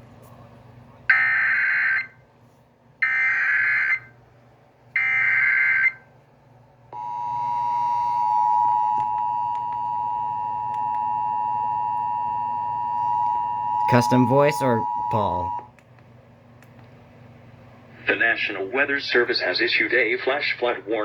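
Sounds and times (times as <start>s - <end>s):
two-tone attention signal: 7.0s - 15.6s.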